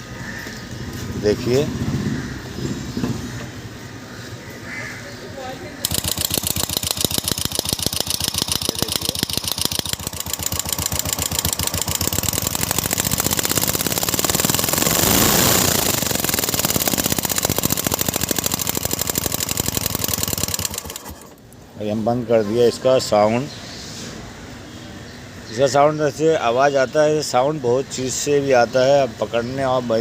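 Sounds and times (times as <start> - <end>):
motorcycle engine idling and revving: 0.7 - 3.3, 5.8 - 21.5
engine ticking: 5.8 - 21.6.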